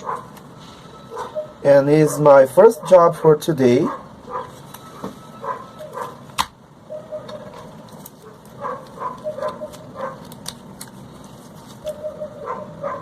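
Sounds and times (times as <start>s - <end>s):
dog yipping: 0.0s - 0.3s, 1.1s - 3.1s, 3.8s - 6.2s, 6.9s - 10.2s, 11.8s - 13.0s.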